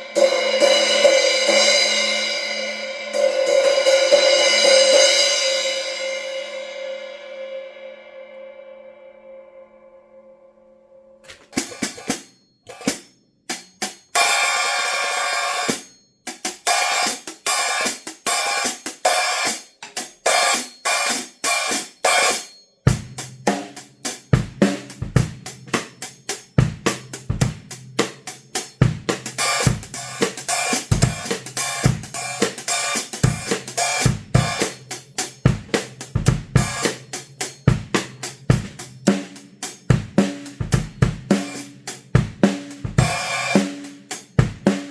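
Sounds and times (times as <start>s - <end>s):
cymbal ringing: 0.0s - 16.1s, 29.4s - 42.1s, 42.8s - 43.6s
snare drum: 11.3s - 13.0s, 26.6s - 37.1s, 37.7s - 44.9s.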